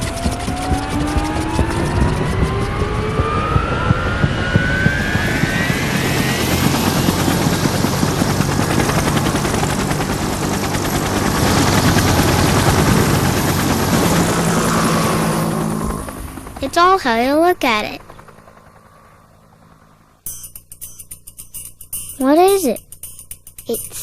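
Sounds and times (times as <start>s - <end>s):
motor-like whine rising in pitch: 0.0s - 16.6s
loud dense rumbling noise: 0.0s - 16.8s.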